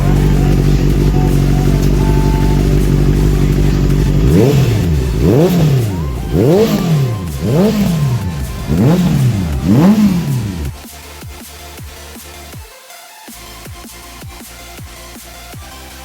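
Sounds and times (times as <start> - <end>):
motorcycle engine revving: 0.0 - 12.6.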